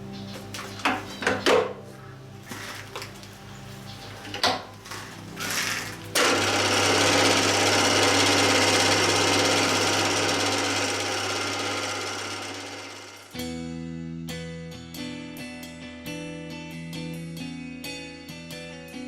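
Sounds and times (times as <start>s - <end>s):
guitar music: 0.0s - 10.3s, 13.3s - 19.0s
motor hum: 0.0s - 13.4s
milling machine cutting metal: 4.8s - 13.3s.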